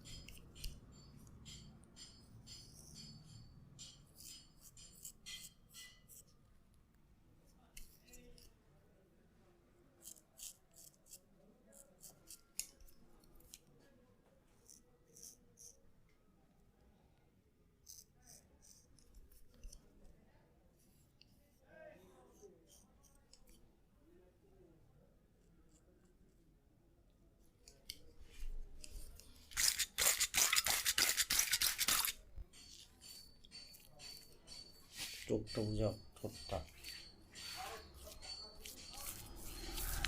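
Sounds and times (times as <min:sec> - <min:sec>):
scissors snipping hair: 0:10.0 - 0:11.2, 0:28.8 - 0:34.2, 0:36.3 - 0:40.0.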